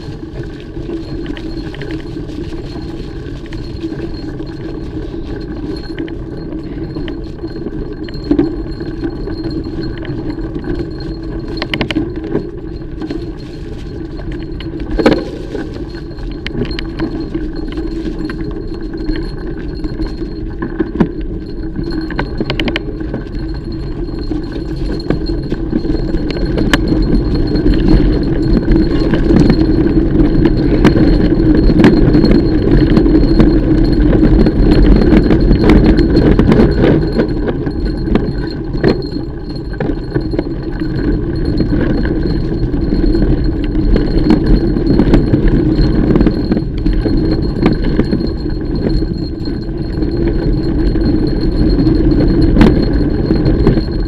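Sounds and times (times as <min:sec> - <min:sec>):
bike tyre and drivetrain noise: 0:00.0 - 0:54.0
metallic rattling from bike: 0:00.0 - 0:54.0.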